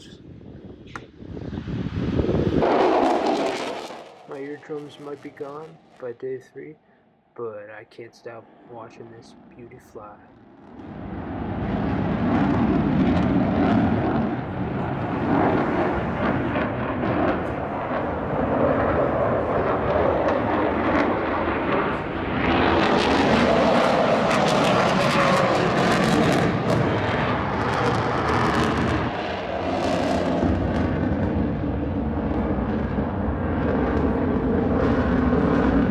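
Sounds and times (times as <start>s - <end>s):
propeller aircraft engines flying over: 7.9s - 35.9s.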